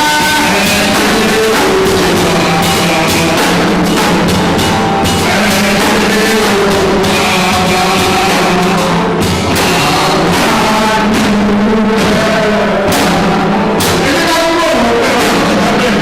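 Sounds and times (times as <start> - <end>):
loud music with drums: 0.0 - 16.0.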